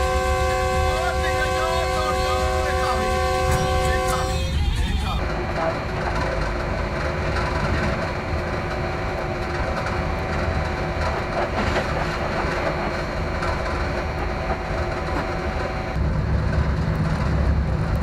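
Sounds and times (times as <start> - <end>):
train wheels rumbling on rail: 0.0 - 18.0.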